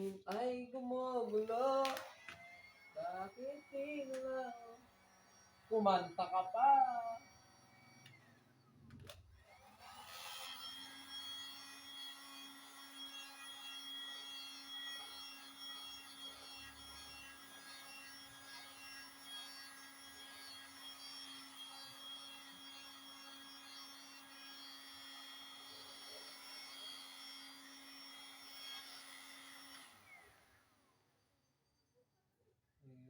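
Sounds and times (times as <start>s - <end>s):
heat gun blower hum and whine: 0.0s - 13.9s.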